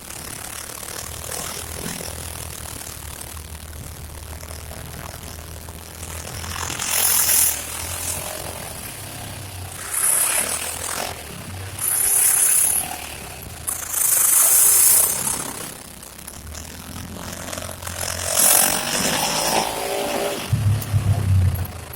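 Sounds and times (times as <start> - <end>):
engine running low and steady: 0.0 - 21.9
loud hissing scraping bursts: 5.9 - 21.9.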